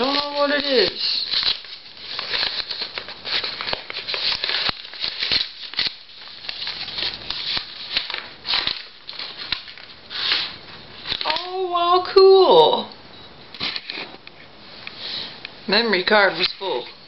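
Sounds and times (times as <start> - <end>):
paper tearing: 0.0 - 11.5
paper rustling and crinkling: 0.0 - 11.6, 13.6 - 15.4, 16.0 - 17.0.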